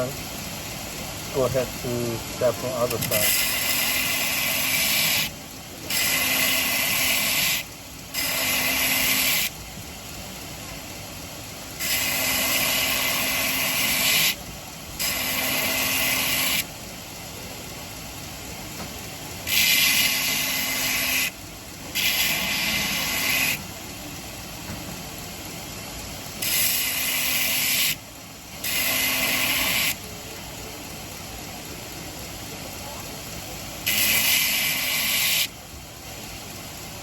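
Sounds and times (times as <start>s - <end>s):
sharpening machine running: 0.0s - 37.0s
blade grinding on sharpener: 11.8s - 14.4s, 19.5s - 21.3s, 22.0s - 23.6s, 28.6s - 30.0s.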